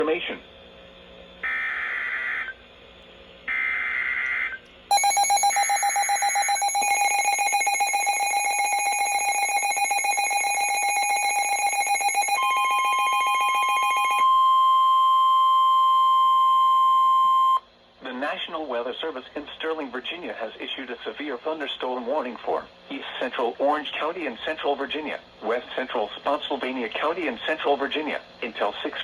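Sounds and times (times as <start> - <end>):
rapidly pulsing alert tone: 4.9 - 14.2
steady high tone: 4.9 - 15.4.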